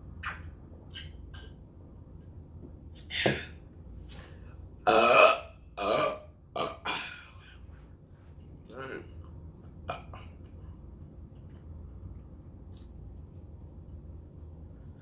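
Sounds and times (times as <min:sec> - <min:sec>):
woman burping loudly: 0:04.9 - 0:07.2.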